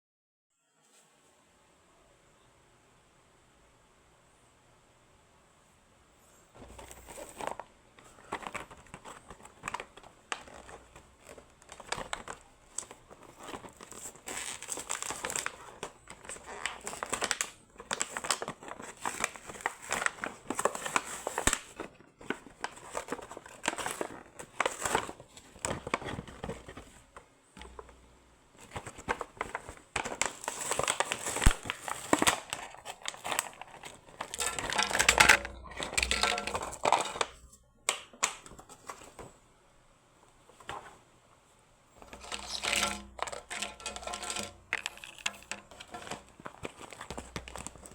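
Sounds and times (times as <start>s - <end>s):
plastic packaging crinkling: 6.6s - 28.0s, 28.6s - 39.4s, 42.0s - 47.9s.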